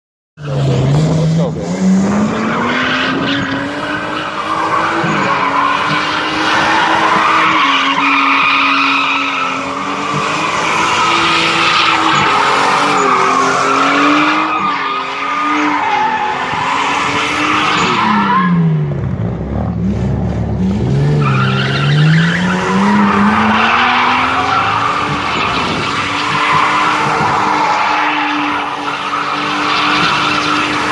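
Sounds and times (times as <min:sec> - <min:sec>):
car engine at high revs: 0:00.4 - 0:30.9
tyres squealing: 0:21.2 - 0:30.9.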